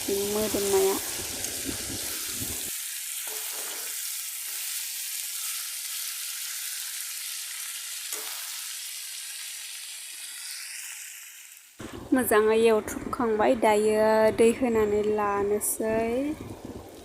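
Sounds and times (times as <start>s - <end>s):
curry sizzling in a pan: 0.0s - 11.9s.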